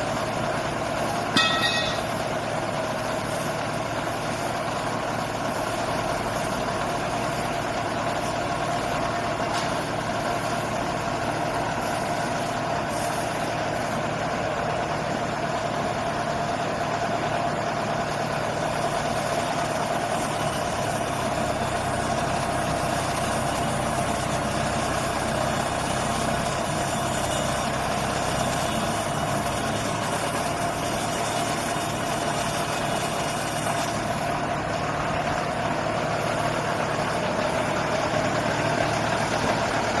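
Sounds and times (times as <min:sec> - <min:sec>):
drilling rig engine running: 0:00.0 - 0:40.0
mid-pitched whine: 0:01.0 - 0:03.5.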